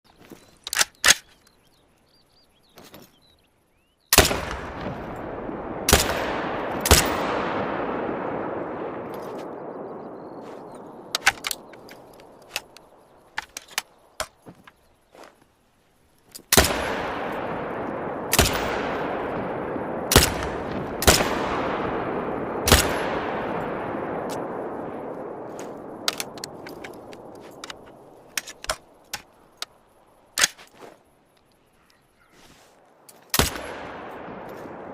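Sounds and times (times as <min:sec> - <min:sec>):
rifle shots with echo: 0:04.1 - 0:12.8, 0:16.5 - 0:29.0, 0:33.3 - 0:34.9
small clicks: 0:11.1 - 0:14.8.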